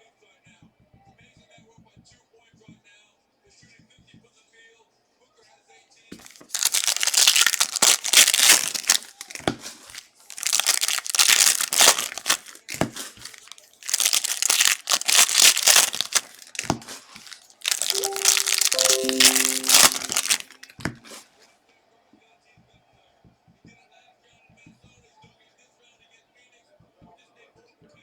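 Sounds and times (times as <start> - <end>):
plastic packaging crinkling and tearing: 6.2 - 21.2.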